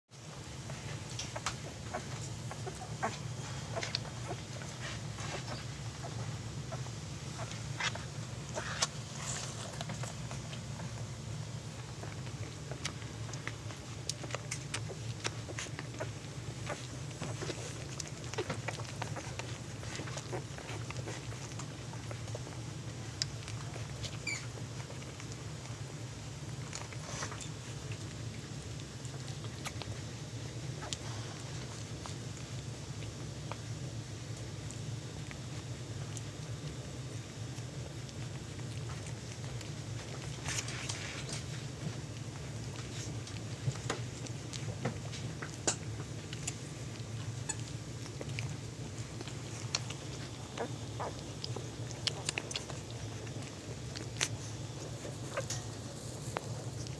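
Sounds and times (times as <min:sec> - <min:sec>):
low steady hum: 0:00.1 - 0:56.9
puppies shuffling: 0:00.2 - 0:56.9
paws scratching and pattering: 0:00.3 - 0:56.9
puppy squeaks: 0:24.2 - 0:24.5.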